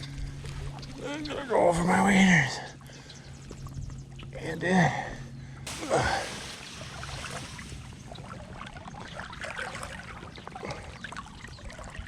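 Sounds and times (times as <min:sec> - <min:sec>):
small water splashes: 0:05.7 - 0:12.0
water sloshing and trickling: 0:05.7 - 0:12.0.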